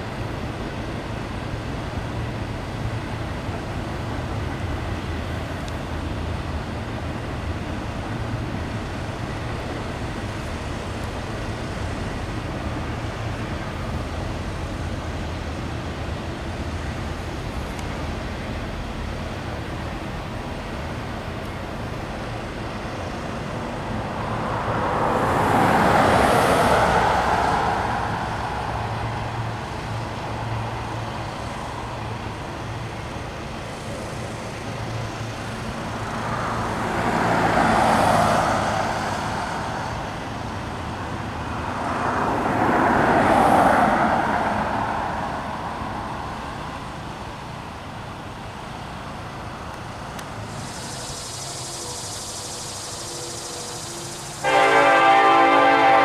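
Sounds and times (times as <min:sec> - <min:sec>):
low engine rumble: 0:00.0 - 0:56.0
vehicle passing by: 0:22.6 - 0:32.8, 0:35.0 - 0:47.1.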